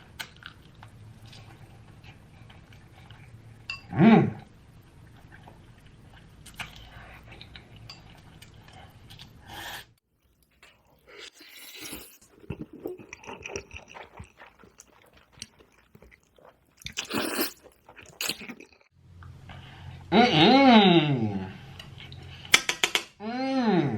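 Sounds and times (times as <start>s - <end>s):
chewing and crunching food: 0.0s - 3.7s, 4.8s - 19.4s.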